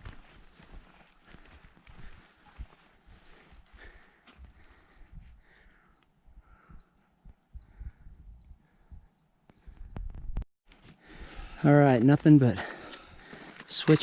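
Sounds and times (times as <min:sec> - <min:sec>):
small bird high rising chirps: 0:06.7 - 0:10.2.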